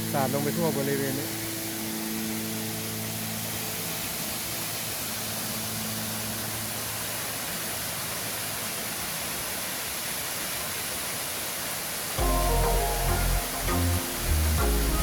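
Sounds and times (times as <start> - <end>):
small waterfall hissing: 0.0 - 15.0.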